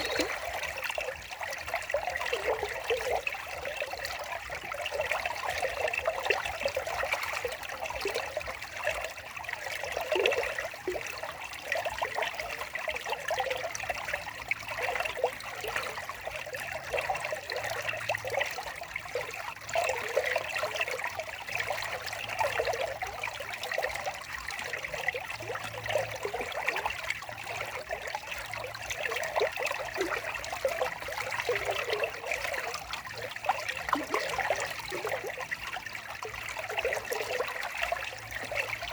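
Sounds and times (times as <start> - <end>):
stream trickling and babbling: 0.0 - 38.9.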